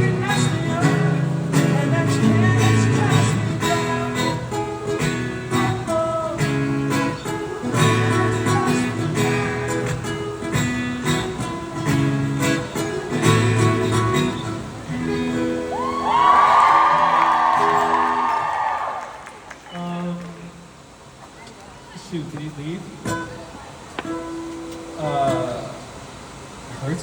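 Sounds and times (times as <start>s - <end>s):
live band with strummed guitar: 0.0s - 18.8s, 23.0s - 26.6s
audience cheering and whooping: 15.3s - 19.7s.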